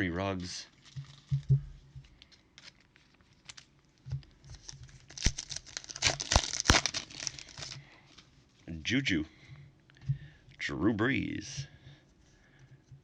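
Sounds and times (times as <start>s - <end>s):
wrapper crinkling and tearing: 0.4s - 1.5s, 2.2s - 8.3s
cards being handled: 2.1s - 3.7s.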